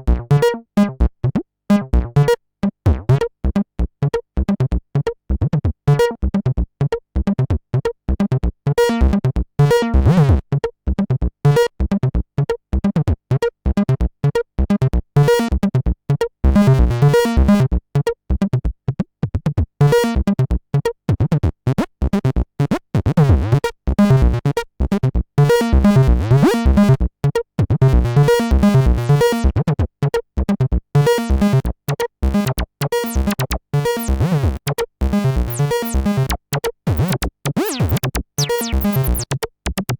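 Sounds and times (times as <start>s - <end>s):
bass synthesizer staccato sequence: 25.6s - 27.0s, 28.0s - 29.8s, 31.0s - 39.9s.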